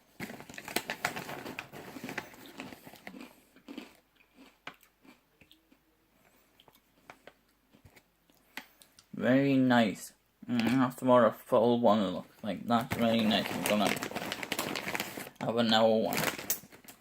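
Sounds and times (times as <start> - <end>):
person chewing crisp snack: 1.9 - 9.0.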